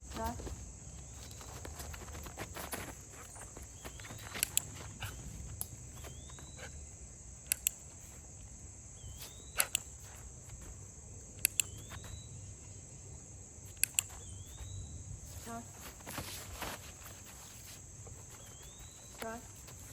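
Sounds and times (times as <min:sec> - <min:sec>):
training clicker clicks: 0:04.2 - 0:04.8, 0:07.4 - 0:08.0, 0:09.5 - 0:10.0, 0:11.4 - 0:12.0, 0:13.7 - 0:14.3.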